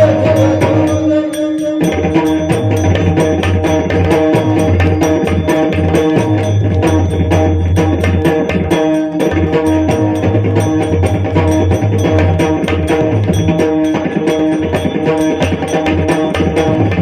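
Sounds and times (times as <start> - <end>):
devotional music: 0.0 - 4.5
sharp percussion strikes: 0.0 - 17.0.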